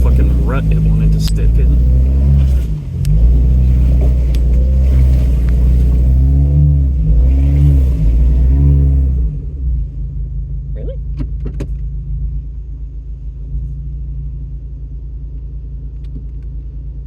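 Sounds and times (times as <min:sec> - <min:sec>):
truck engine revving: 0:00.0 - 0:09.9.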